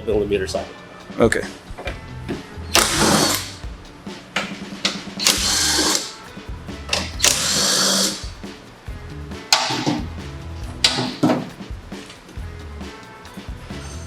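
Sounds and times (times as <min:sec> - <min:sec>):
background music: 0:00.0 - 0:14.0
power tool whining: 0:02.7 - 0:03.6, 0:05.2 - 0:06.1, 0:07.2 - 0:08.3.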